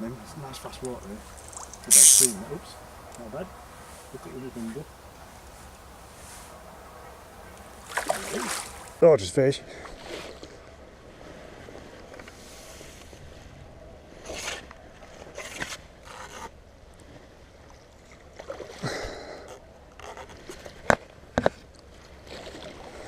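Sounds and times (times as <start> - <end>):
fast river water rushing: 0.0 - 9.1
fishing gear scraping and rustling: 0.2 - 9.0, 14.2 - 16.6.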